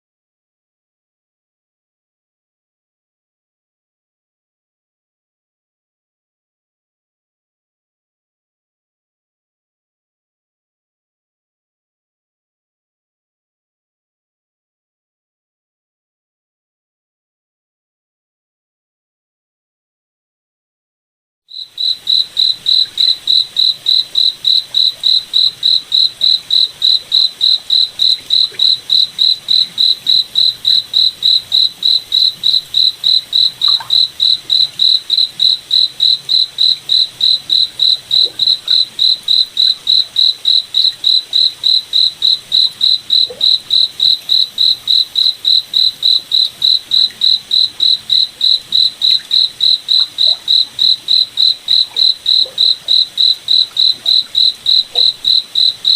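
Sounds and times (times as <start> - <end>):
cricket chirping: 21.5 - 55.9.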